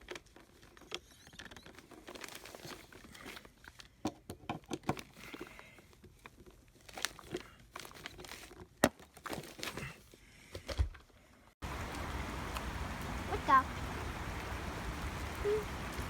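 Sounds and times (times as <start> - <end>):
crinkling and rustling material: 0.0 - 11.3.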